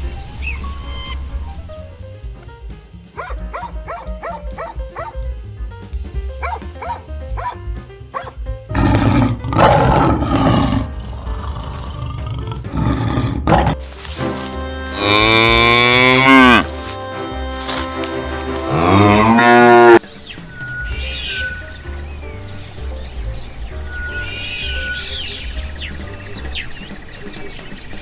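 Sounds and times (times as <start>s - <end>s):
background music: 0.0s - 28.0s
large animal roaring: 8.7s - 13.8s, 18.7s - 20.0s.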